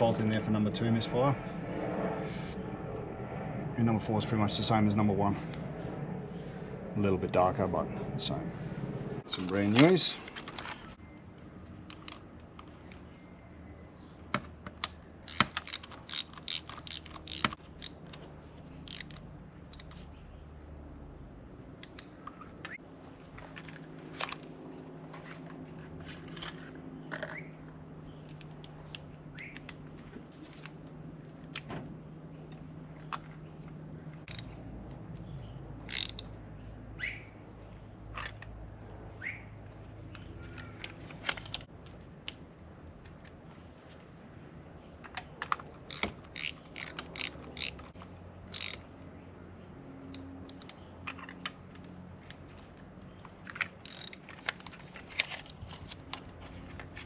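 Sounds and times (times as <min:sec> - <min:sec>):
steady low hum: 0:00.0 - 0:14.2.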